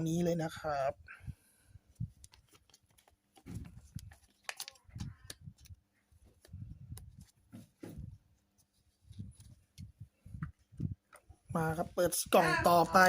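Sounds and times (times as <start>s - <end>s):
handling trading cards and foil packs: 1.9s - 7.5s.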